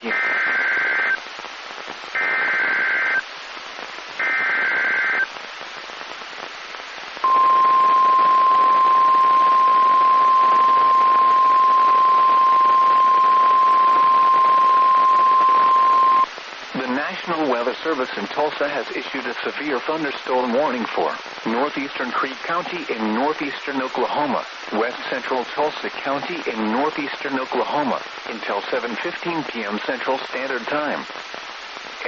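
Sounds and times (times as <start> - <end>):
static hiss: 0.0 - 32.0
steady warning alarm tone: 7.2 - 16.3.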